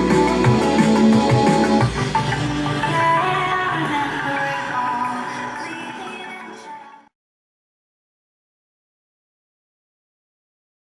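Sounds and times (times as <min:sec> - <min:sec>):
instrumental music: 0:00.0 - 0:04.0.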